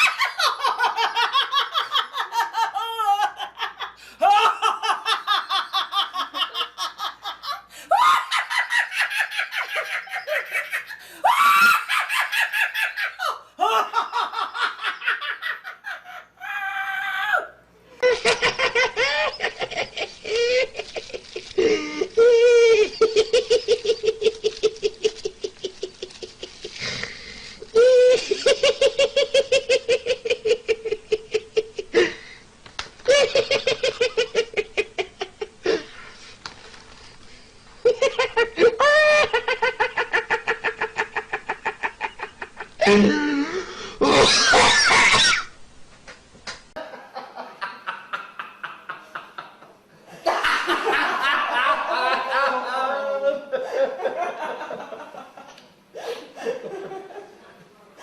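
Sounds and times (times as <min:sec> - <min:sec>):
harsher laugh: 0:00.0 - 0:16.8, 0:18.0 - 0:26.9, 0:37.8 - 0:43.4
hearty high-pitched laughter: 0:00.0 - 0:16.9, 0:18.0 - 0:26.8.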